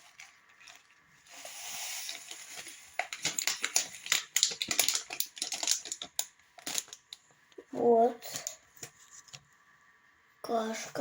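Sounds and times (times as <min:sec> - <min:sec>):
packet crinkling: 0:02.0 - 0:07.2.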